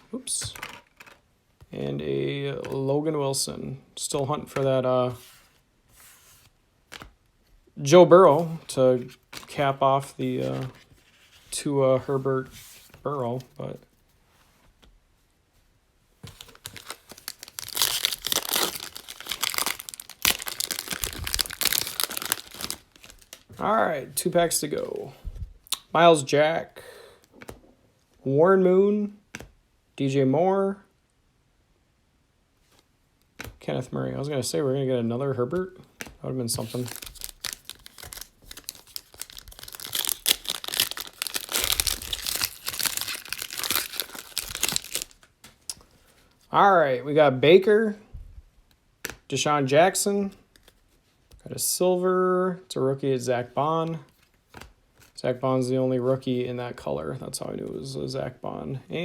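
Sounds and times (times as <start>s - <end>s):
plastic wrapper tearing and crinkling: 16.4s - 23.5s, 36.6s - 45.3s.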